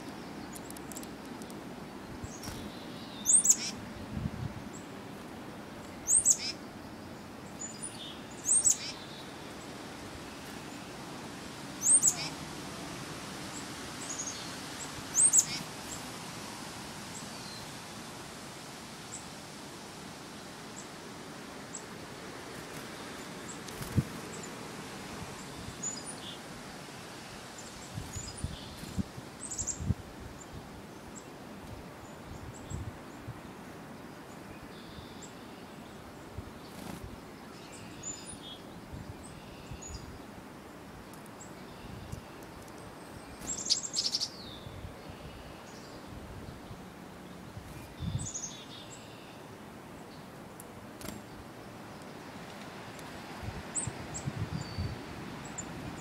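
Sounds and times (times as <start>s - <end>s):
birds chirping: 0.0s - 11.0s, 11.8s - 12.4s, 13.5s - 16.1s, 34.3s - 56.0s
outdoor hiss: 0.0s - 56.0s.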